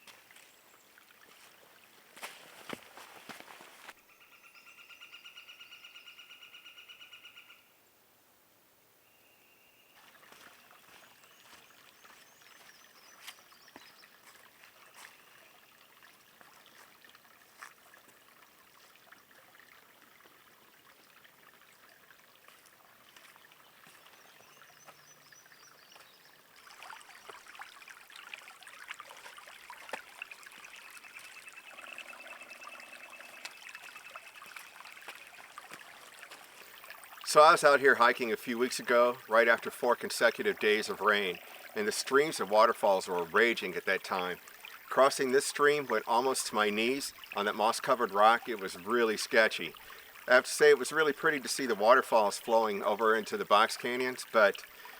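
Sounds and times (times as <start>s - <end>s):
light footsteps on trail: 0.0s - 4.0s, 9.9s - 28.2s, 28.8s - 31.4s, 33.2s - 37.2s
stream trickling: 0.0s - 5.9s, 9.7s - 54.9s.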